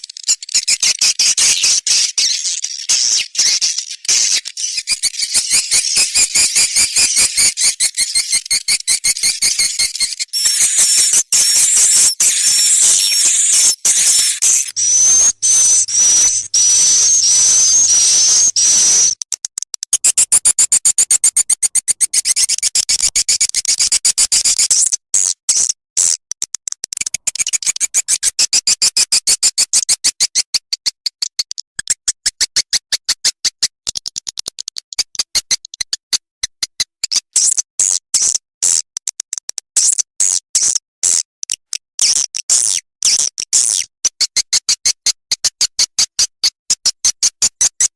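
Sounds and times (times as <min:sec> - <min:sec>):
rapid dry clicks: 0:00.0 - 0:25.0, 0:25.6 - 0:37.4, 0:38.6 - 0:39.7
high twittering bird chirps: 0:00.0 - 0:25.3.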